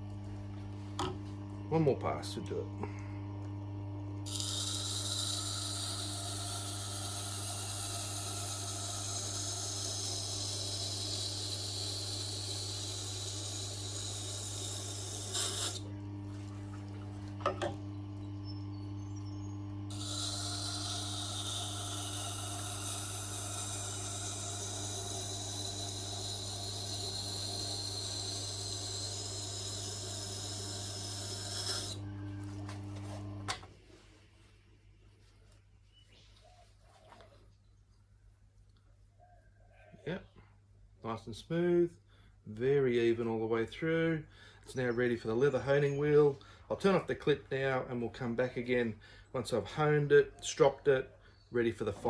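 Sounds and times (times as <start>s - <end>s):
sharpener motor humming: 2.4s - 16.3s, 17.3s - 33.6s
knife grinding on wheel: 4.2s - 15.9s, 19.9s - 33.2s.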